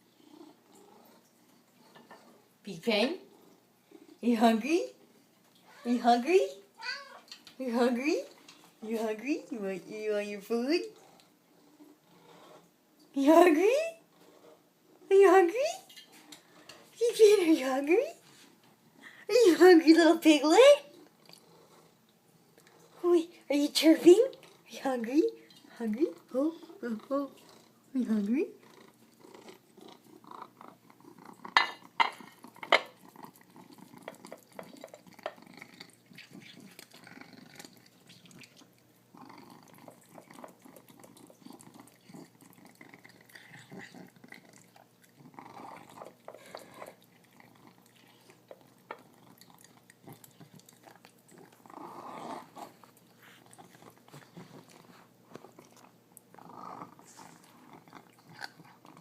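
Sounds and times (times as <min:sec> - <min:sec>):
cat chewing: 0:28.6 - 0:59.0.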